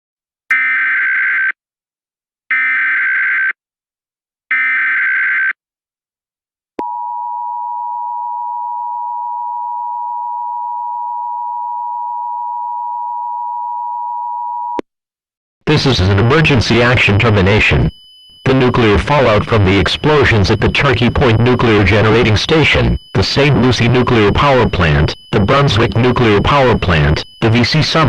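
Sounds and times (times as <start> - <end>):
digital data tone bursts: 15.7 - 28.0
two-tone attention signal: 15.8 - 28.0.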